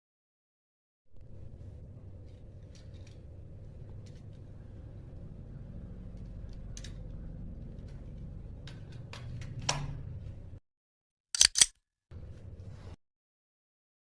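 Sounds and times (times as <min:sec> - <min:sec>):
low hum: 0:01.1 - 0:10.6
sharp mechanical clicks: 0:11.4 - 0:11.8.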